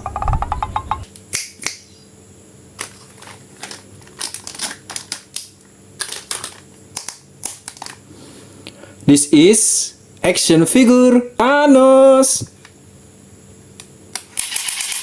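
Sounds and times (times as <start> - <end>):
plastic packaging clicks and crinkles: 2.7 - 8.1.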